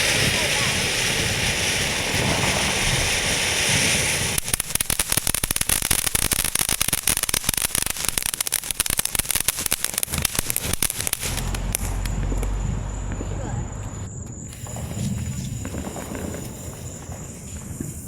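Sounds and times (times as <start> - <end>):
firework crackling: 0.0 - 18.0
firework hissing: 0.0 - 18.0.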